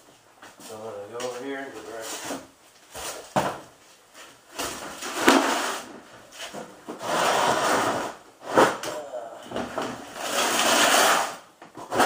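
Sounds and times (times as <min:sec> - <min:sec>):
scraping rub: 0:05.0 - 0:08.8, 0:10.0 - 0:12.0.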